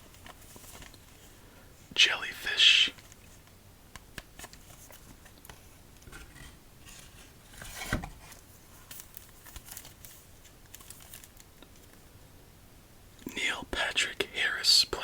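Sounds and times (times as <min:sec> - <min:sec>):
packaging crinkling: 0:08.8 - 0:11.9.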